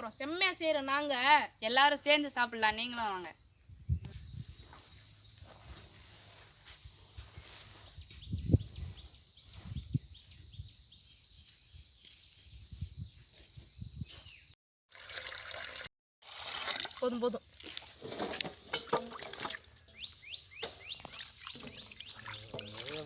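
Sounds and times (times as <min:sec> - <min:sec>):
insects chorus: 0:03.3 - 0:14.6, 0:19.5 - 0:23.0.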